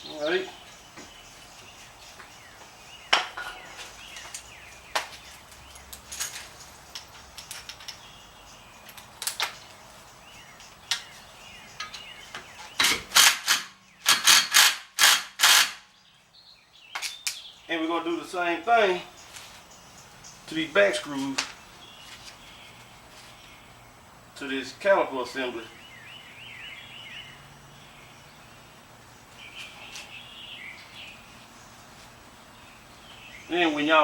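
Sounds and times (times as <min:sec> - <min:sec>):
hand tools clinking on metal: 0:05.7 - 0:08.0.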